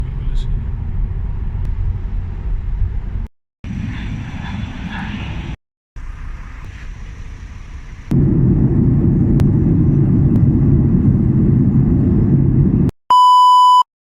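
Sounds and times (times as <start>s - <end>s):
jet engines rumbling: 0.0s - 12.9s.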